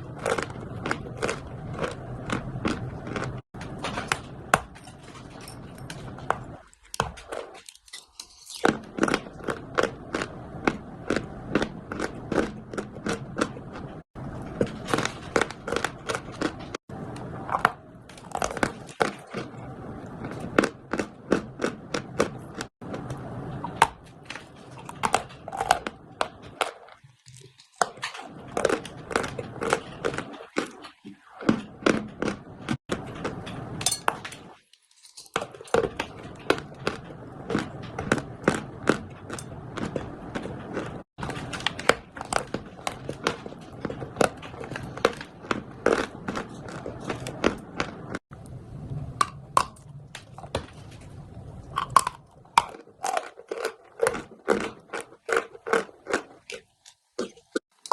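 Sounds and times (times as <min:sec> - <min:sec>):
chalk crunching while chewed: 0:00.0 - 0:03.4, 0:06.1 - 0:14.0, 0:35.4 - 0:48.2, 0:51.8 - 0:57.9.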